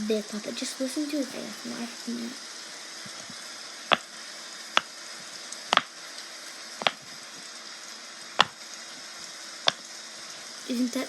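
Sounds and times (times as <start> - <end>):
fidget toy bubbles popping: 5.7 - 5.9, 8.4 - 8.6.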